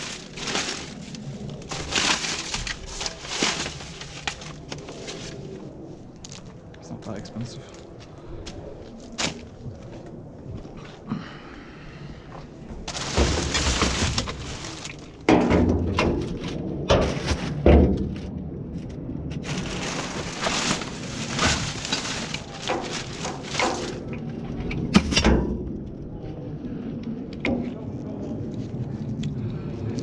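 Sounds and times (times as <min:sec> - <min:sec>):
rubbish rustling: 0:00.0 - 0:06.5, 0:09.0 - 0:09.6, 0:12.8 - 0:15.3, 0:19.4 - 0:24.1
objects knocking and clattering: 0:12.9 - 0:18.2, 0:19.4 - 0:24.1.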